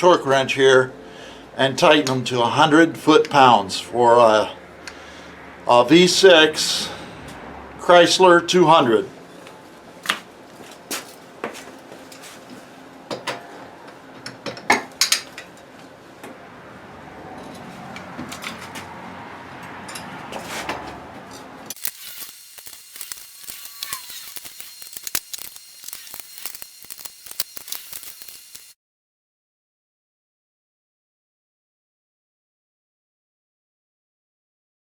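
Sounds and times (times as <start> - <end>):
metallic clinks of torque wrench: 21.7 - 28.6.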